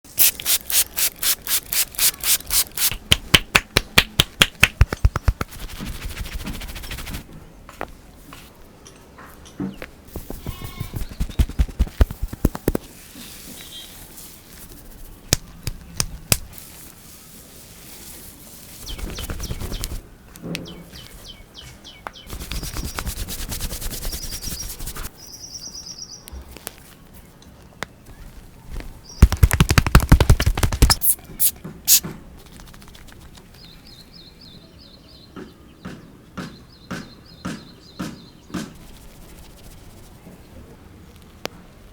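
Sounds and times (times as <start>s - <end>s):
rapid slaps: 2.0s - 7.2s, 10.2s - 12.8s, 29.2s - 31.2s.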